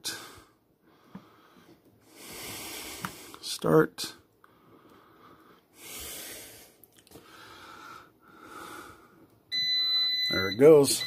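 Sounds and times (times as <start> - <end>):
soft breaths: 0.0 - 9.5
air fryer high beep: 9.5 - 11.0.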